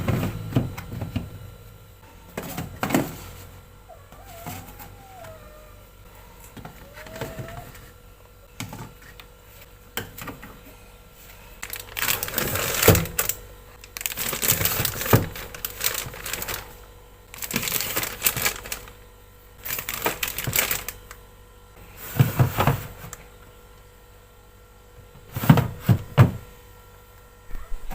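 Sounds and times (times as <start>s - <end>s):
packaging rustling and clattering: 11.6s - 19.0s, 19.6s - 21.1s.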